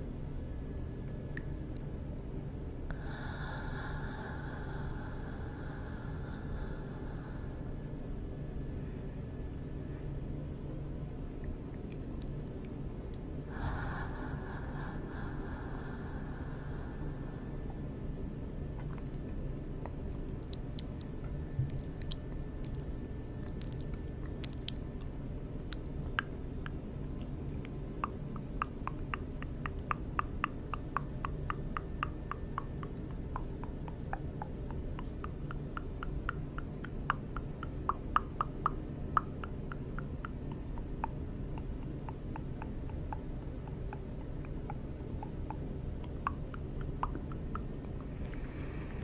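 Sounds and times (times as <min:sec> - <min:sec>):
steady low hum: 0:00.0 - 0:49.0
wet mouth clicks: 0:01.3 - 0:02.0, 0:11.4 - 0:13.2, 0:18.4 - 0:49.0.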